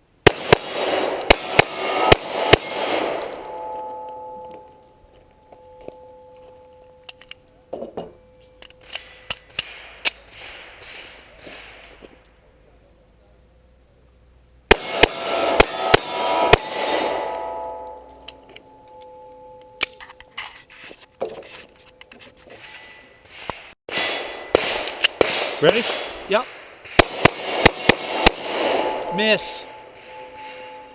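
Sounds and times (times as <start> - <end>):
pistol shots: 0.2 - 3.7, 14.7 - 17.9, 23.9 - 29.9
faint sharp cracks and clangs: 3.2 - 12.4, 16.6 - 23.8.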